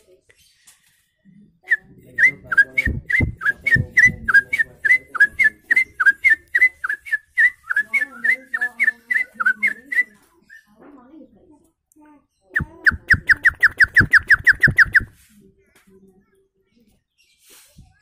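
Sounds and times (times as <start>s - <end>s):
man whistling birdlike chirps: 1.7s - 10.1s, 12.6s - 15.1s.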